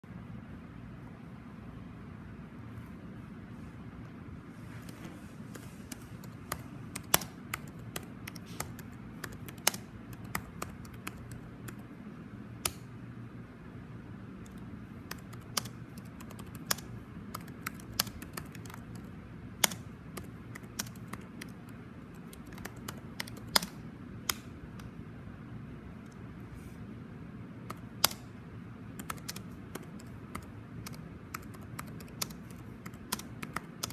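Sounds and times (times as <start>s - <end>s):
low background hum: 0.0s - 33.9s
keyboard keystroke clicks: 5.9s - 11.8s, 12.6s - 12.9s, 19.6s - 21.6s, 22.2s - 24.9s, 27.7s - 28.3s, 29.0s - 33.9s.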